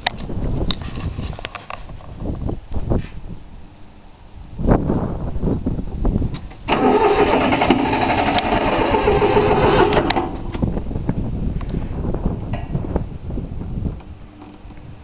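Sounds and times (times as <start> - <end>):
diesel engine cranking: 6.5 - 10.9.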